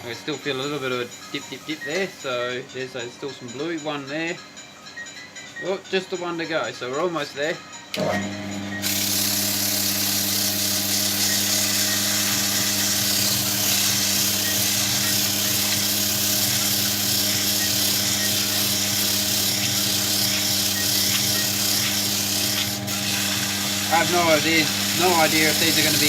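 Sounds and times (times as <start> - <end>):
electric motor hum: 8.0 - 26.0
sandpaper hissing on wood: 9.0 - 26.0.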